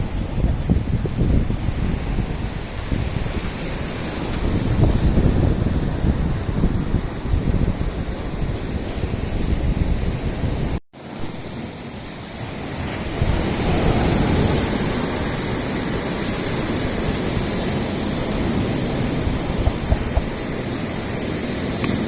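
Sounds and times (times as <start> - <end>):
surf washing against shore: 0.0 - 22.0
wind buffeting microphone: 0.0 - 22.0.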